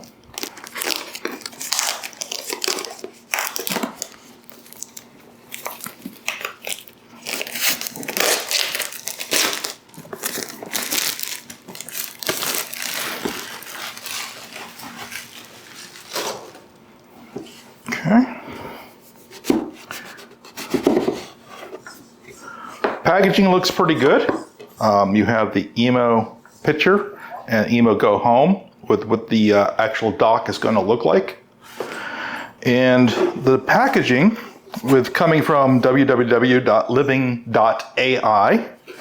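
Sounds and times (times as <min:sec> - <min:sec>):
packaging crackling and rustling: 0:00.0 - 0:16.8.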